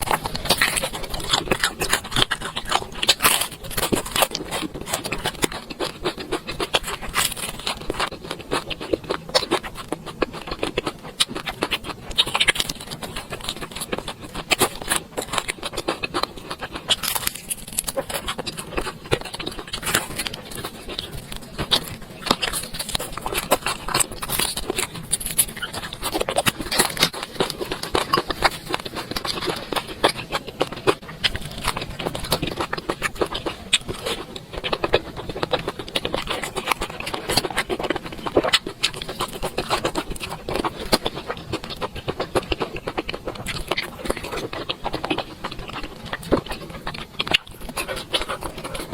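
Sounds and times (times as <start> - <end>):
wet chewing and mouth clicks: 0.0 - 48.9.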